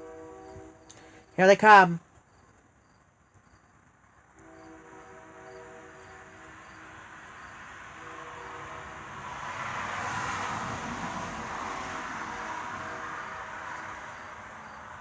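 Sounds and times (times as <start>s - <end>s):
locomotive horn chord: 0.0s - 2.0s, 4.4s - 7.2s, 7.8s - 9.6s, 12.4s - 13.6s
train rumble: 0.0s - 15.0s.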